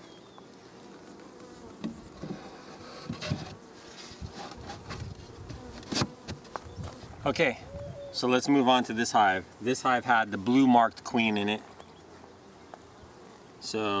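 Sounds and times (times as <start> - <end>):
honey bees buzzing: 0.0 - 14.0.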